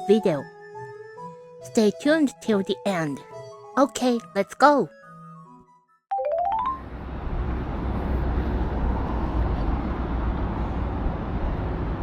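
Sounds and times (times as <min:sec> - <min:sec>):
cars rumbling past: 0:06.8 - 0:12.0.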